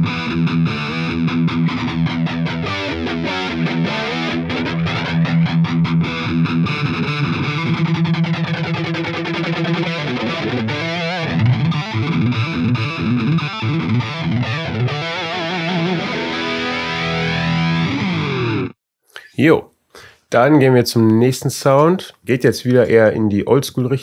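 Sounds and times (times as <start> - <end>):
distorted electric guitar with flanger: 0.0 - 18.8.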